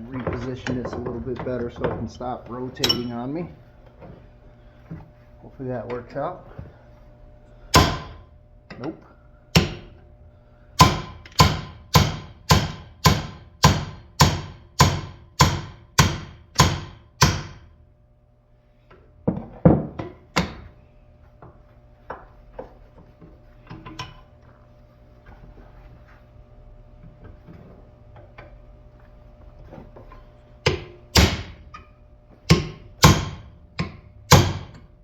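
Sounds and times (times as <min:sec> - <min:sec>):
hammer striking metal punch: 0:02.8 - 0:03.1, 0:07.7 - 0:08.2, 0:09.5 - 0:10.0, 0:10.8 - 0:17.7, 0:20.0 - 0:20.7, 0:30.6 - 0:31.6, 0:32.5 - 0:34.8.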